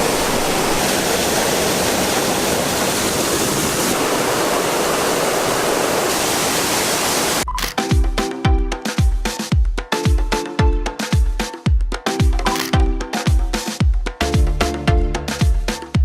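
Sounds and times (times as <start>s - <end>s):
waterfall roaring: 0.0s - 7.4s
music with deep thumping beat: 7.8s - 16.0s.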